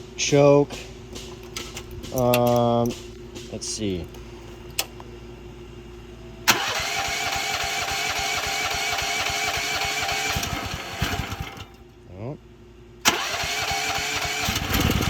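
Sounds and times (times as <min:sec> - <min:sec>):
small engine running: 0:06.5 - 0:11.8, 0:13.1 - 0:15.0.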